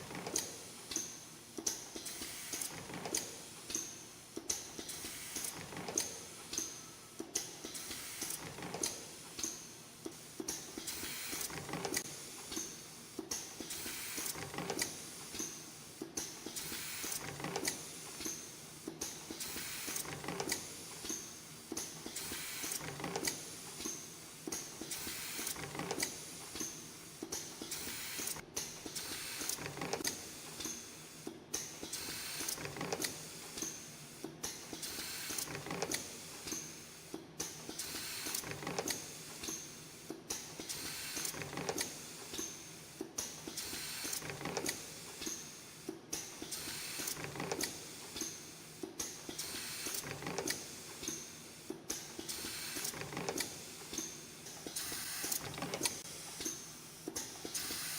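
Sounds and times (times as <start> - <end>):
rapid mechanical clicking: 43.0 - 57.8.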